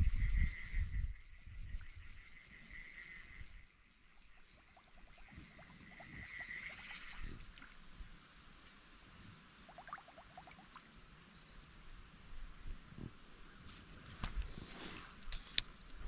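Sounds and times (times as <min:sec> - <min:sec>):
creek water running: 0:04.8 - 0:11.0.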